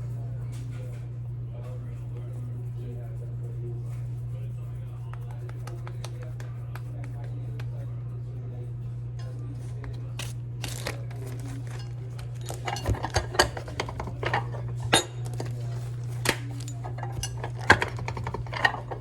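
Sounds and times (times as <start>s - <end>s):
steady low hum: 0.0s - 19.0s
dishes and utensils clinking: 9.2s - 19.0s.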